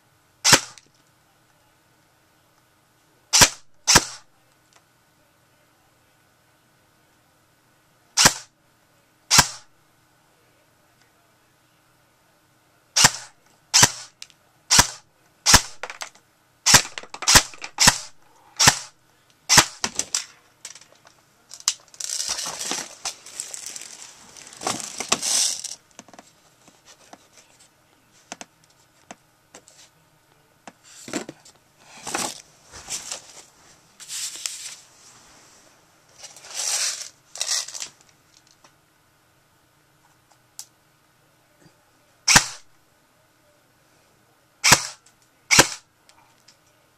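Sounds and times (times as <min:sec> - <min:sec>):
airsoft gun firing: 0:00.4 - 0:00.8, 0:03.3 - 0:04.2, 0:08.2 - 0:08.5, 0:09.3 - 0:09.7, 0:13.0 - 0:14.1, 0:14.7 - 0:16.0, 0:16.7 - 0:18.9, 0:19.5 - 0:20.1, 0:42.3 - 0:42.7, 0:44.6 - 0:45.8.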